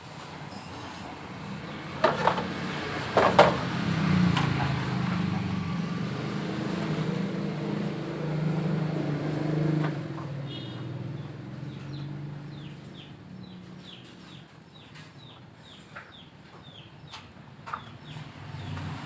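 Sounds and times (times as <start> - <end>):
sharp knocks: 3.2 - 3.7.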